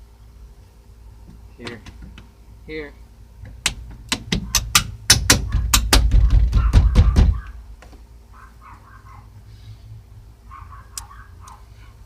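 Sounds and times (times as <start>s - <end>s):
sharp knocks and clicks: 3.4s - 7.5s.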